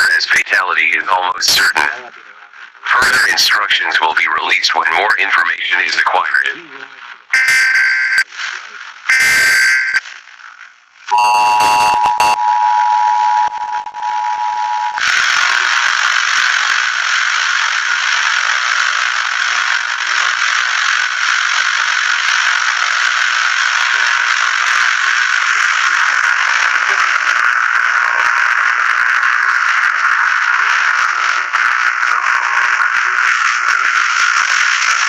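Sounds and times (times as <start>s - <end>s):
loud static hiss: 0.0s - 7.3s, 15.0s - 35.0s
electronic data burst: 7.3s - 8.3s, 9.1s - 10.0s.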